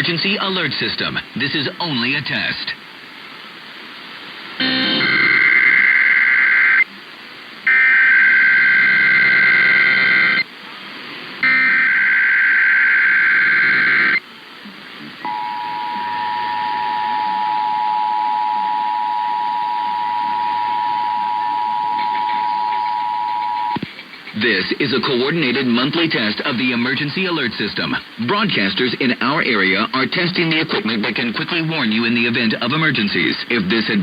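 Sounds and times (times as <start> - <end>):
two-tone alarm: 4.6 - 6.8, 7.7 - 10.4, 11.4 - 14.2, 15.2 - 23.8
warbling data burst screech: 4.6 - 6.8, 11.4 - 14.2.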